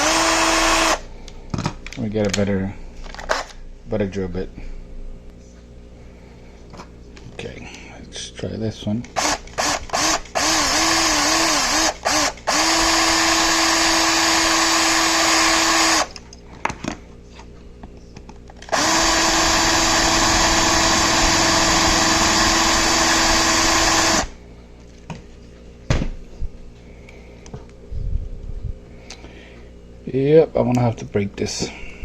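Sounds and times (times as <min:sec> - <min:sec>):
power drill drilling metal: 0:00.0 - 0:01.0, 0:09.2 - 0:16.1, 0:18.7 - 0:24.4.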